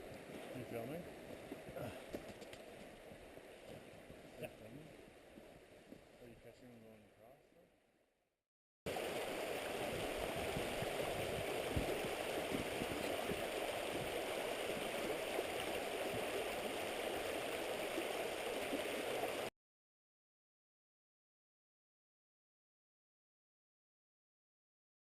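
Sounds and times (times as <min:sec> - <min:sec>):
creek water rushing: 0:00.0 - 0:06.2, 0:08.9 - 0:19.5.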